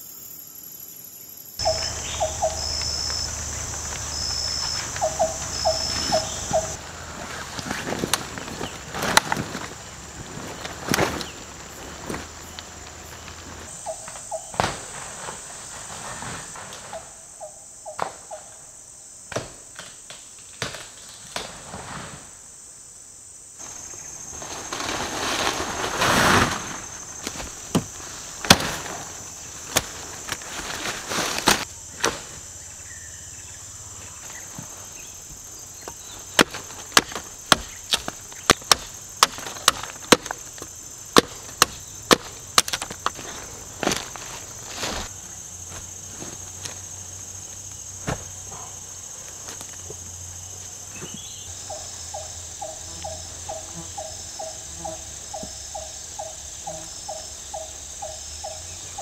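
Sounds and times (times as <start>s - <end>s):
forest insects droning: 0.0s - 59.0s
tent handling noises: 2.6s - 13.7s, 23.6s - 32.4s, 39.3s - 46.8s.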